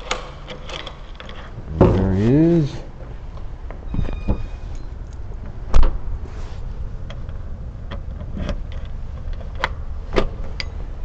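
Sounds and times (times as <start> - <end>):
steady low rumble: 1.5 - 11.0.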